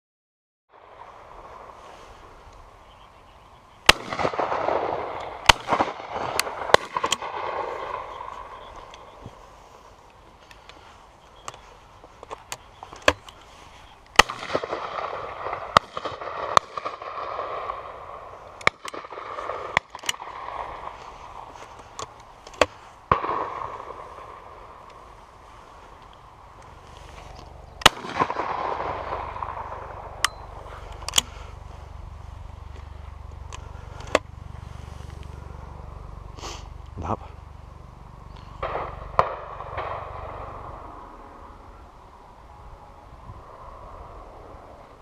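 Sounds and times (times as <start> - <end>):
shotguns firing: 3.8 - 9.2, 14.2 - 25.0, 27.7 - 31.6, 38.6 - 41.3
gunshot echoes: 3.9 - 8.7, 14.2 - 21.4, 23.1 - 24.8, 27.8 - 30.2, 38.6 - 41.5.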